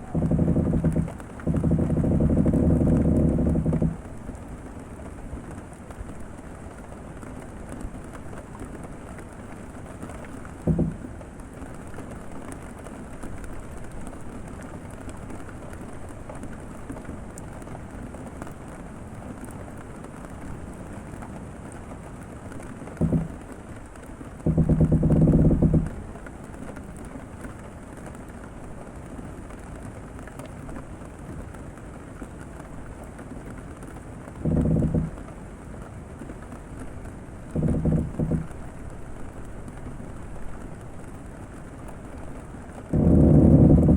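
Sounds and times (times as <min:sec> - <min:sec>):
wooden boat creaking: 0:00.0 - 0:04.8, 0:10.0 - 0:11.8, 0:22.6 - 0:26.4, 0:34.4 - 0:35.5, 0:37.4 - 0:40.6, 0:42.8 - 0:43.9
rain pattering on boat cabin: 0:00.0 - 0:43.9.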